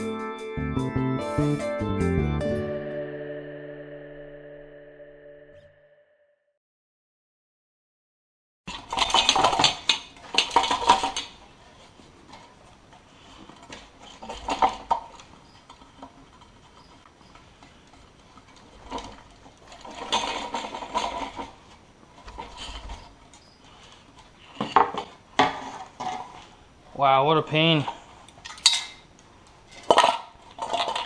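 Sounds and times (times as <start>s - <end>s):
small metal parts clinking: 8.7s - 11.4s, 28.4s - 29.0s, 29.6s - 31.0s.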